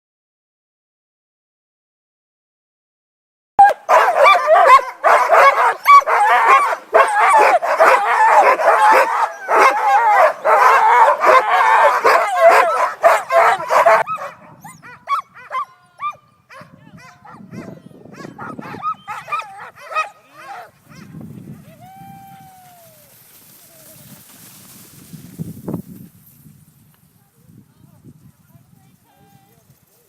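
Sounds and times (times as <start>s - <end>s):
dogs yipping and whining: 3.6s - 21.0s
dogs barking and yelping: 3.6s - 21.1s.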